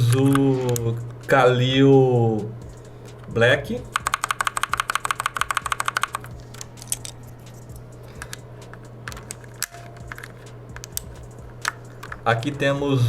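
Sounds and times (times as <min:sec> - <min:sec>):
steady low hum: 0:00.0 - 0:13.0
keyboard key clicks: 0:03.9 - 0:07.2, 0:09.1 - 0:12.2.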